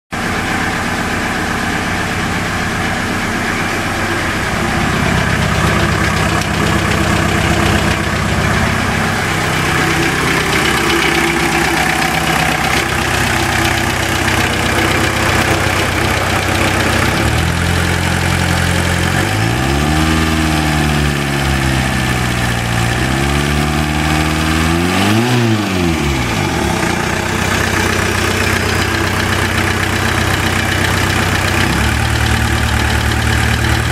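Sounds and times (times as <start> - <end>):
diesel engine idling: 0.2 - 33.9
engine revving: 4.4 - 33.9
engine ticking knock: 4.8 - 19.2, 27.4 - 33.9.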